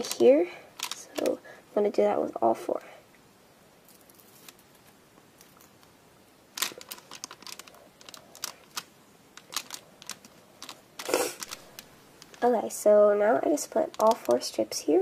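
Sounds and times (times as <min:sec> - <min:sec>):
paper rustling and crinkling: 0:06.6 - 0:12.5, 0:13.9 - 0:14.5.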